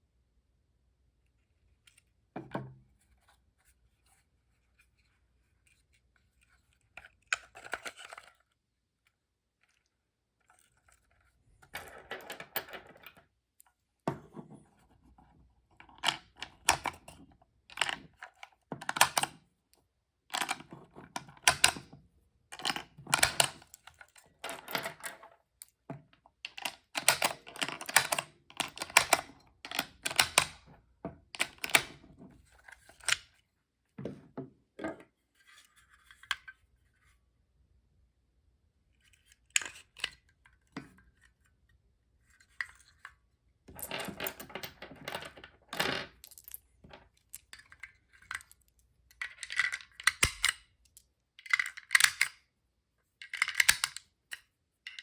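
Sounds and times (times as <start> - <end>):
cartridges clicking into magazine: 49.5 - 50.6.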